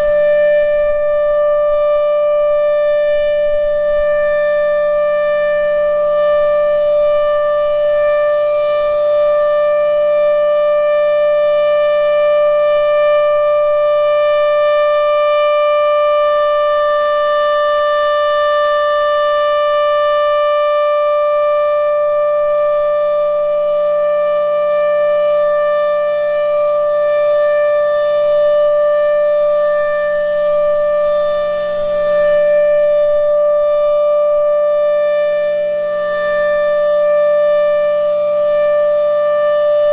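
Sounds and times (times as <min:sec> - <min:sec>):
warning siren steady tone: 0:00.0 - 0:39.9.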